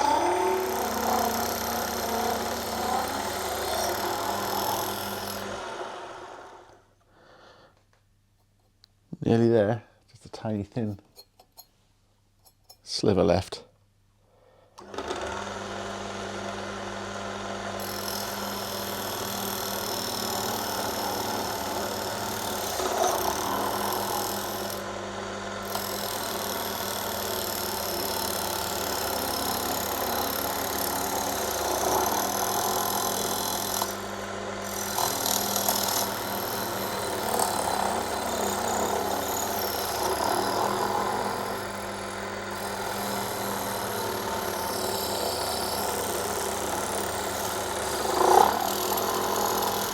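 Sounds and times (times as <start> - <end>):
cutting tool cutting metal: 0.0 - 5.6, 17.8 - 25.0, 25.6 - 49.9
lathe motor hum: 0.0 - 6.8, 14.8 - 49.9.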